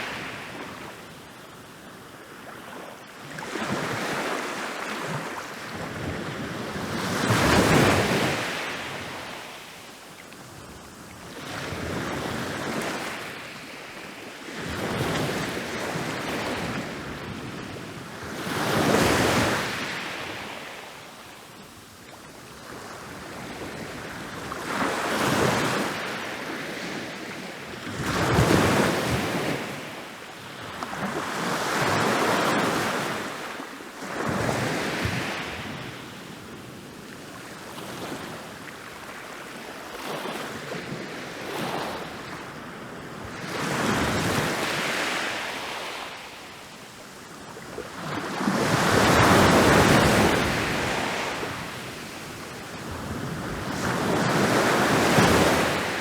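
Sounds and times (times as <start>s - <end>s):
ocean waves crashing on beach: 47.9s - 56.0s.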